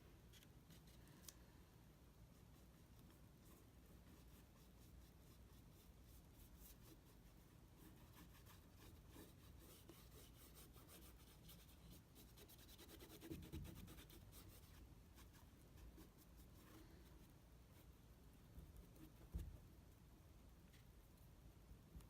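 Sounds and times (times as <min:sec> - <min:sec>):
paintbrush scratchy strokes: 0:02.3 - 0:19.4.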